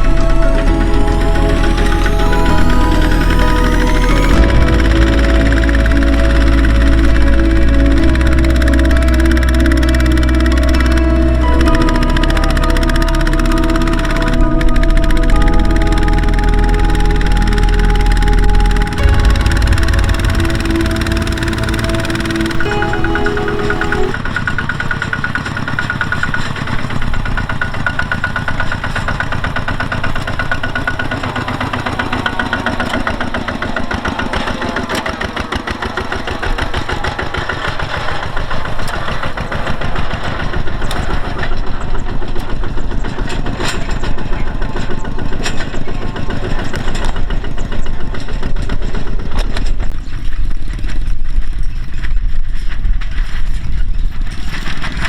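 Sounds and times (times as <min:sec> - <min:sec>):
diesel engine running: 0:00.0 - 0:24.2.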